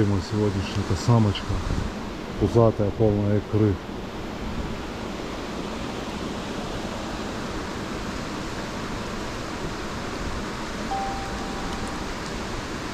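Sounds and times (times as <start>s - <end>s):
thin steady tone: 10.9s - 12.6s.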